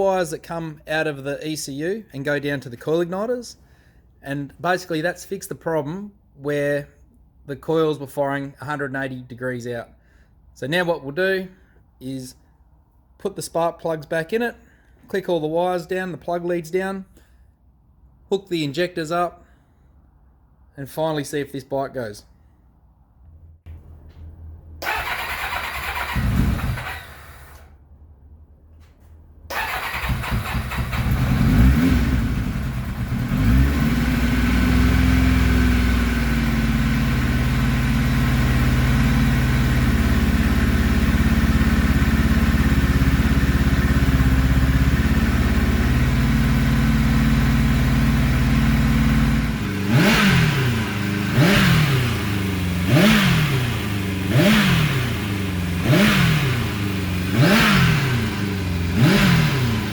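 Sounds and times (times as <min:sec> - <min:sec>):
motorcycle engine cranking: 0:24.8 - 0:27.8, 0:29.5 - 0:33.3
motorcycle engine idling: 0:29.6 - 0:59.9.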